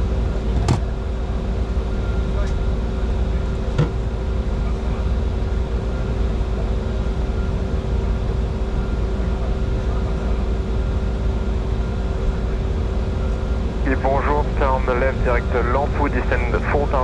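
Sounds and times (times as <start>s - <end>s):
constant hums: 0.0s - 17.0s.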